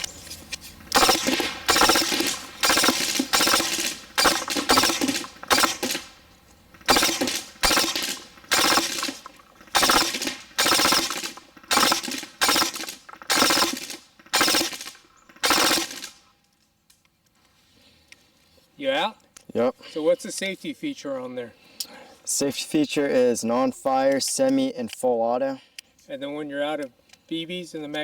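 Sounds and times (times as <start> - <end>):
airsoft rifle firing bursts: 0.8 - 16.2.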